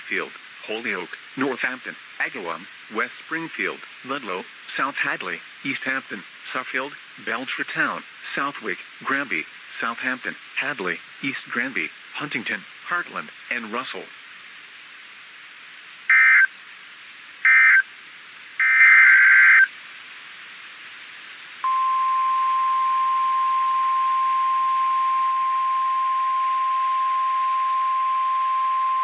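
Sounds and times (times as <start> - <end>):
digital data tone bursts: 16.1 - 16.5, 17.5 - 17.9, 18.6 - 19.7
steady warning alarm tone: 21.6 - 29.0.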